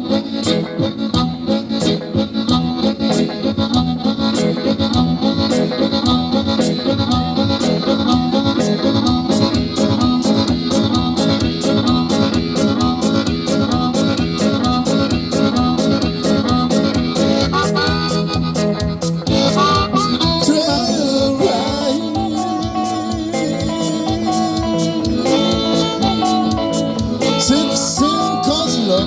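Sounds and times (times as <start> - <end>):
free-reed lead melody: 0.0 - 29.0
guitar: 0.0 - 29.0
drum beat: 6.1 - 29.0.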